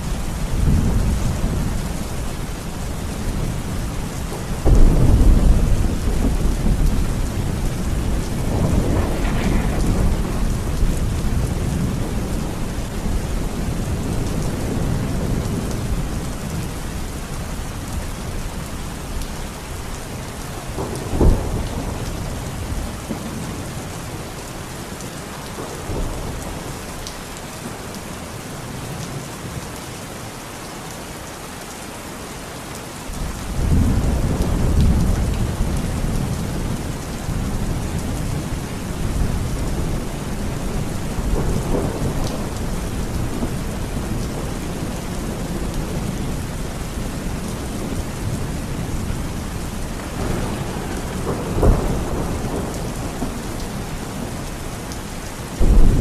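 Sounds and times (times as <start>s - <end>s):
steady rain falling: 0.0s - 56.0s
low thunder rumble: 0.1s - 16.7s, 33.2s - 54.7s, 55.6s - 56.0s
thunder clap: 4.6s - 12.7s, 50.0s - 53.5s.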